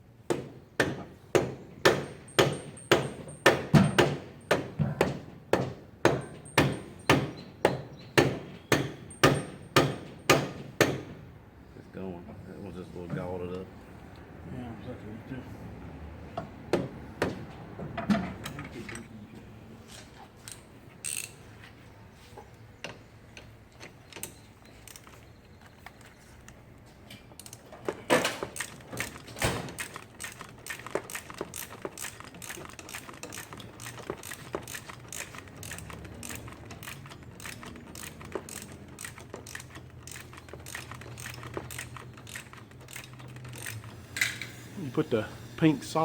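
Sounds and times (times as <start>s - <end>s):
ratchet clicking: 20.5s - 21.4s, 28.4s - 44.6s
metal tool clicks and clinks: 27.1s - 44.6s.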